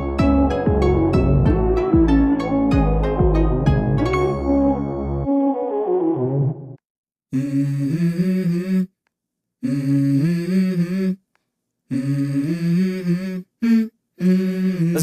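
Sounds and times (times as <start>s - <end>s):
wordless hummed vocal: 7.3s - 8.9s, 9.6s - 11.2s, 11.9s - 15.0s.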